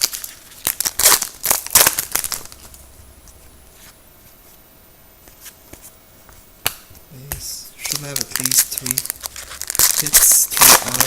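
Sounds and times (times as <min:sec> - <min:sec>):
wrapper and cards rustling: 0:00.0 - 0:04.0, 0:07.8 - 0:11.0.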